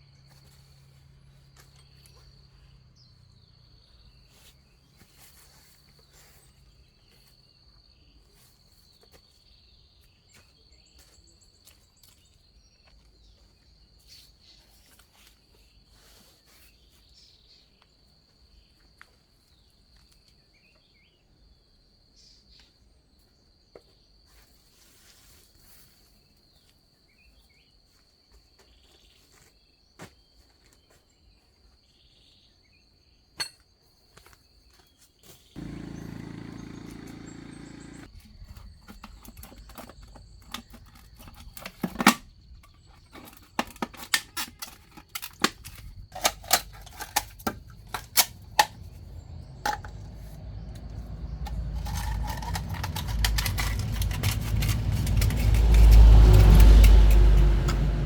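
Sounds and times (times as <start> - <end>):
hand tools clicking and knocking: 35.6 - 38.1, 43.0 - 49.0, 49.6 - 58.0
low hum: 35.6 - 38.1, 47.6 - 58.0.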